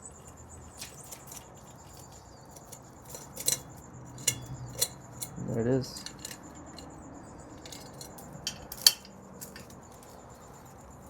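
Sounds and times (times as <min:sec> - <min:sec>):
metal chain clinking: 0:00.2 - 0:11.0.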